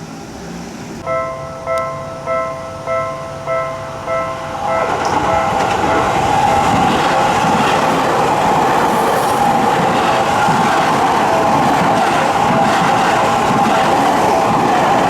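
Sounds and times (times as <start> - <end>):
electric train running: 0.0 - 15.0
level-crossing alarm bell dinging: 1.0 - 7.9.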